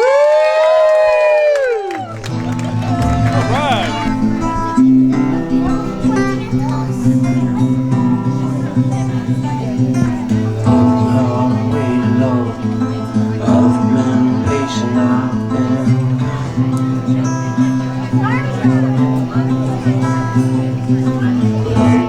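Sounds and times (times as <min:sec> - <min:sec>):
guitar music: 0:02.0 - 0:22.0
low bass notes: 0:02.2 - 0:22.0.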